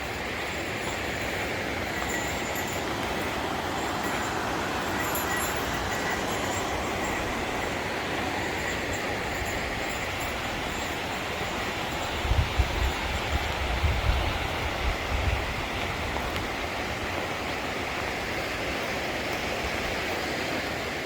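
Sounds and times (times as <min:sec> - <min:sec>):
fast river water rushing: 0:00.0 - 0:21.0.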